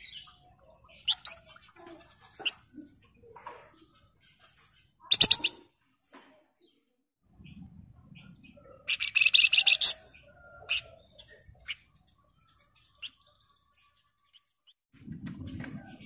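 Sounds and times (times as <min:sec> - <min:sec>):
songbird trill: 0:00.0 - 0:05.7
bird sharp chips: 0:01.0 - 0:01.5, 0:05.0 - 0:05.6.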